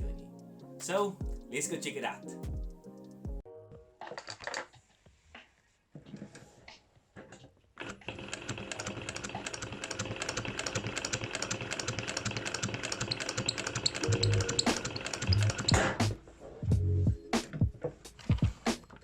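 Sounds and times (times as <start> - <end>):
sewing machine stitching clatter: 7.2 - 16.0.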